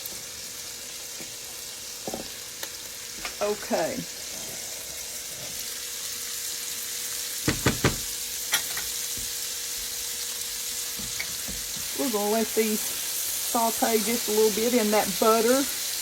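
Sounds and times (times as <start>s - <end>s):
tomatoes sizzling in a pan: 0.0s - 16.0s
sharp knocks: 7.5s - 8.1s.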